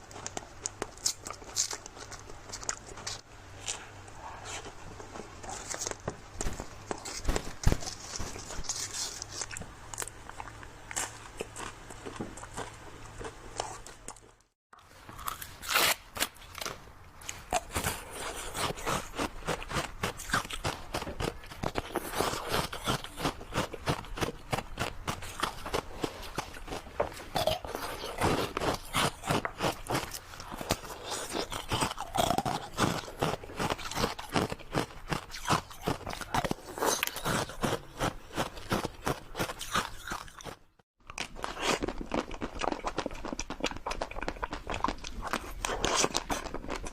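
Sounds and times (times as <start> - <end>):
crunching and chewing ice cream: 0.0 - 4.7, 5.4 - 46.9.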